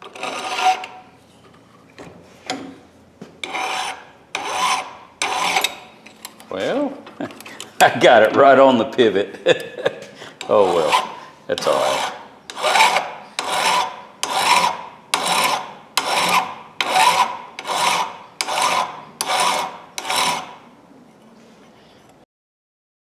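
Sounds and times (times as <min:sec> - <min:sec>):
file scraping on steel: 0:00.0 - 0:01.2, 0:03.4 - 0:05.9, 0:10.4 - 0:20.6.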